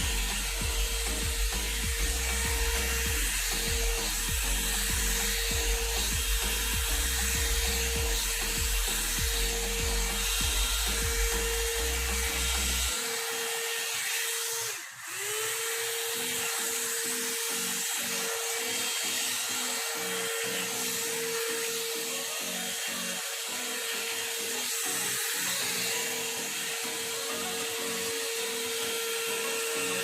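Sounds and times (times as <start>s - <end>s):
hot-air brush dryer running: 0.0s - 30.0s.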